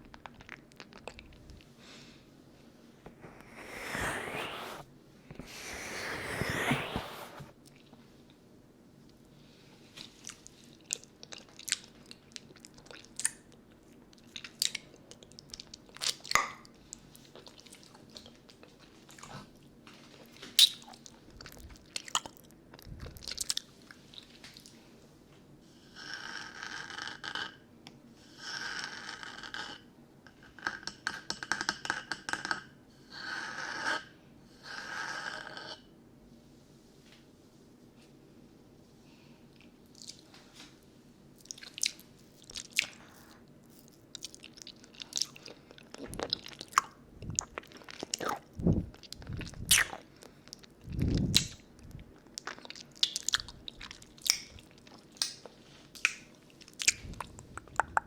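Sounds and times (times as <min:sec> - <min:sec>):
sucking on a lollipop: 0:03.1 - 0:07.5, 0:41.5 - 0:50.0, 0:50.8 - 0:51.6, 0:56.6 - 0:58.0
wet mouth clicks and smacks: 0:49.4 - 0:50.0, 0:51.0 - 0:51.6, 0:52.4 - 0:58.0.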